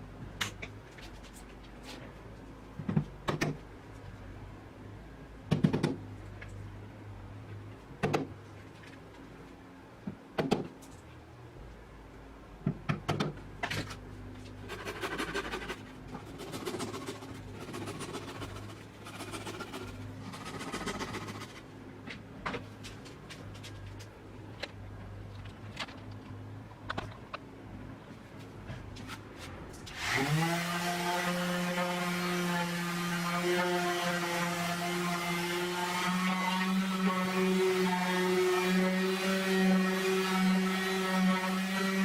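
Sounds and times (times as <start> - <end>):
rough rasping noise: 14.6 - 21.6.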